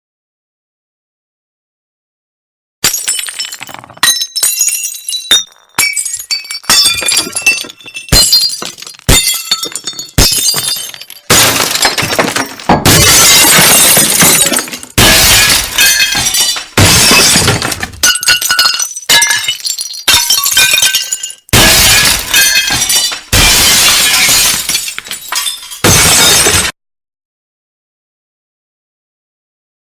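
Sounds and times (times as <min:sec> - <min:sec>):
glass shattering: 0:02.8 - 0:26.8.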